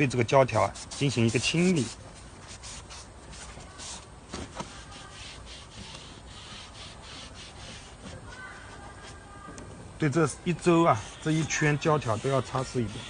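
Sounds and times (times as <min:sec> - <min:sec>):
cloth rubbing rubber seal: 0:00.6 - 0:08.5.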